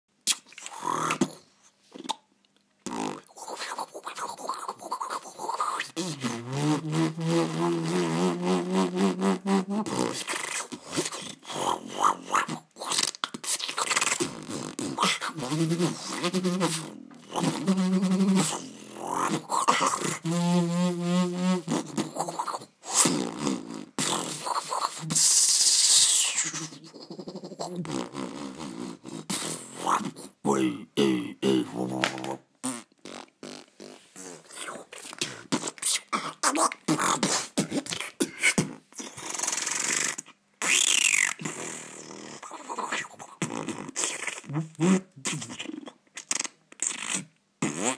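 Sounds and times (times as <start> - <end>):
hissing and clicking mouth sounds: 0.2 - 47.9
beatboxed buzzing hum: 4.5 - 11.2, 13.4 - 25.4
beatboxed percussive clicks: 12.4 - 18.6.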